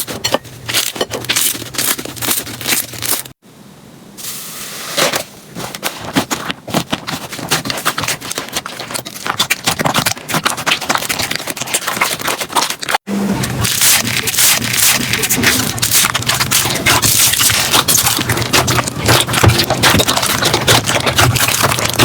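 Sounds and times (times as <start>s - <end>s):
slime crackling and popping: 13.6s - 22.0s.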